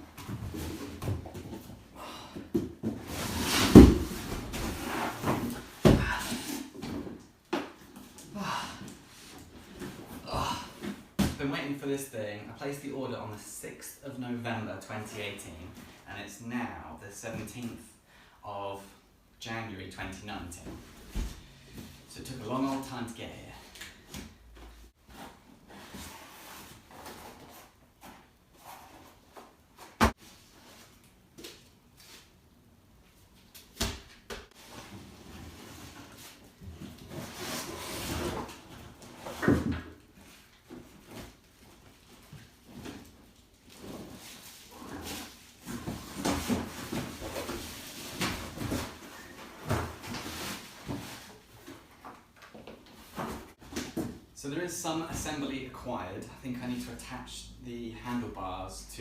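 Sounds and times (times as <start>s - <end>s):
cardboard rustling and scraping: 2.8s - 7.3s, 34.6s - 54.2s
cardboard packaging scraping and rustling: 34.6s - 39.3s.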